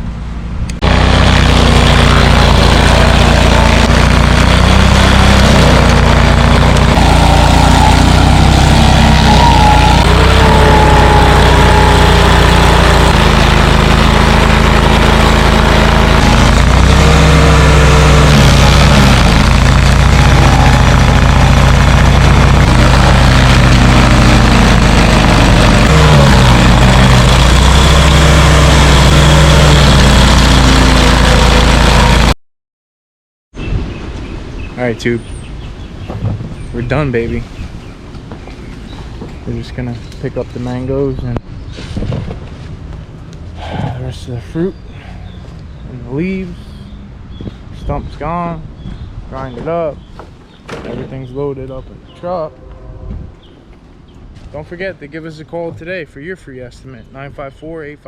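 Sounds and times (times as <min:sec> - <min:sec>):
stump grinder engine: 0:00.7 - 0:32.4.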